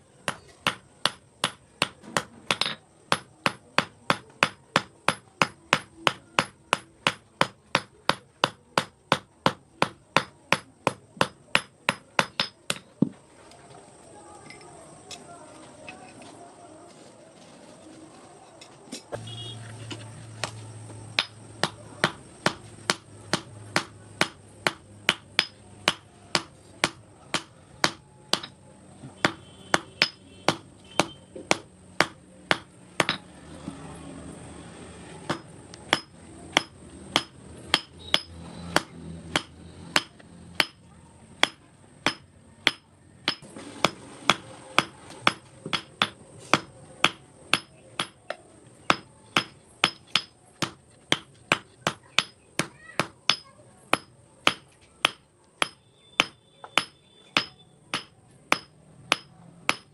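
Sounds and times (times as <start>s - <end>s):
hammer striking steel on anvil: 0.3s - 12.9s, 21.2s - 28.6s, 29.2s - 33.2s, 35.3s - 40.8s, 41.4s - 59.9s.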